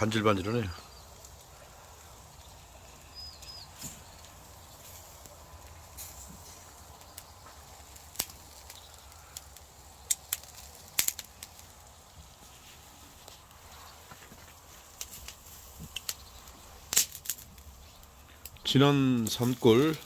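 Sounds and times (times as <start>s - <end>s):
campfire crackling and popping: 0.0s - 20.0s.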